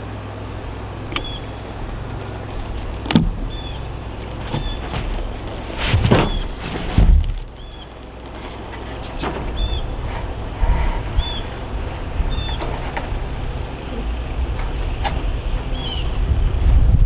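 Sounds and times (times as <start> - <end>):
light knocks: 1.1 - 7.8
wind rumble on microphone: 9.2 - 17.0.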